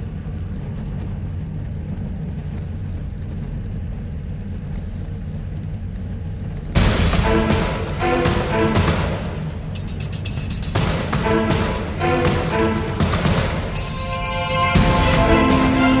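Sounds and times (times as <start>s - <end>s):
wind and road noise: 0.0s - 6.9s
loud music with drum hits: 6.8s - 16.0s.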